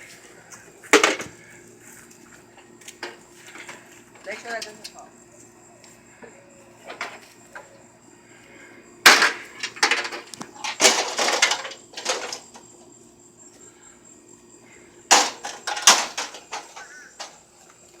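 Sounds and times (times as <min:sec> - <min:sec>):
crickets chirping: 0:00.0 - 0:18.0
heavy blows smashing a microwave: 0:09.0 - 0:12.7, 0:15.1 - 0:17.4.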